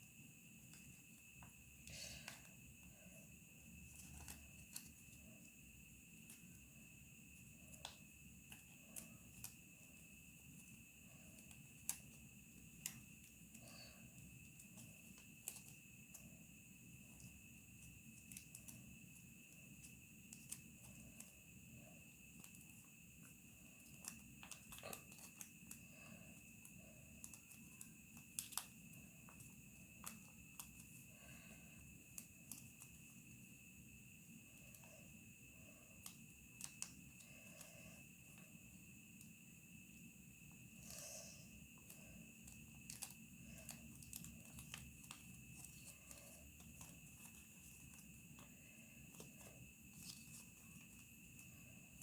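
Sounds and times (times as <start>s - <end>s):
faint high-pitched whine: 0.0s - 52.0s
paper rustling and folding: 42.5s - 52.0s.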